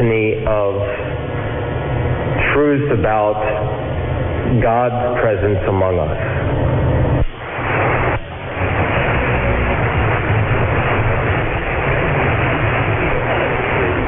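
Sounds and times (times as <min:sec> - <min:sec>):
radio static hiss: 0:00.0 - 0:14.0.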